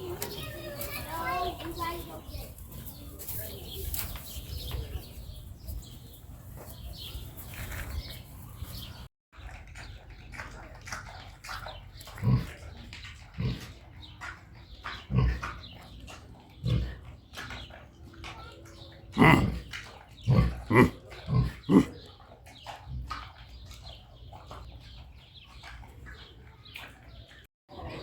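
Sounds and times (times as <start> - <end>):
pig grunting: 12.0 - 14.2, 14.8 - 17.7, 18.8 - 23.4.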